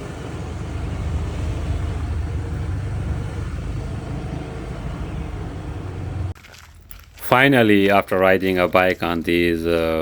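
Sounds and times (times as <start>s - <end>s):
motorbike engine hum: 0.0s - 6.4s
road and tyre noise: 0.0s - 10.0s.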